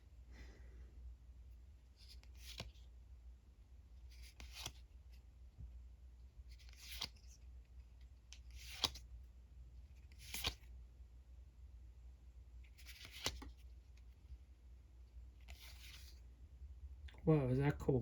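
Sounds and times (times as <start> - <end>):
trading cards sliding and flipping: 1.9 - 2.9, 4.0 - 4.9, 6.5 - 9.1, 9.8 - 10.7, 12.6 - 14.2, 15.3 - 16.2.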